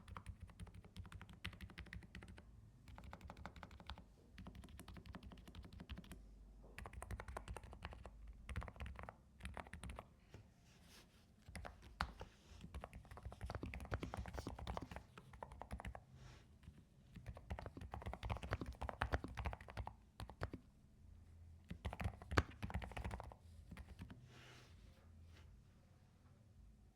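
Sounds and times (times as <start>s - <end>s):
mechanical keyboard typing: 0.0s - 6.2s, 6.8s - 10.0s, 11.5s - 16.0s, 17.1s - 20.6s, 21.7s - 24.2s.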